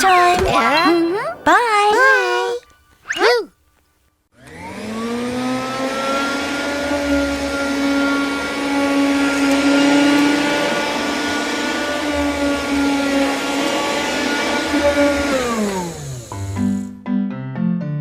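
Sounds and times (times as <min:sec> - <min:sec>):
vacuum cleaner motor running: 0:04.4 - 0:16.9.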